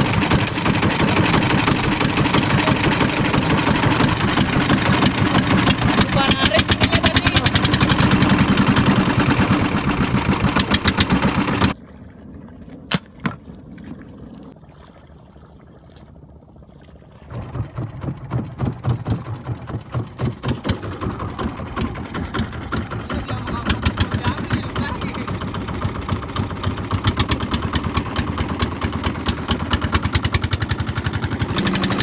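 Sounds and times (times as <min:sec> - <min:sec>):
sharp crack: 0:00.0 - 0:11.7
small boat engine running: 0:00.0 - 0:11.8, 0:16.8 - 0:32.0.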